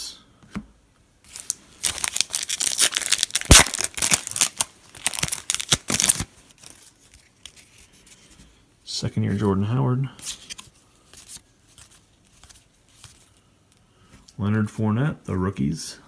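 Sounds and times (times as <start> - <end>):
plastic wrapper tearing and crinkling: 1.3 - 7.8
wrapper sharp snap: 2.8 - 6.3.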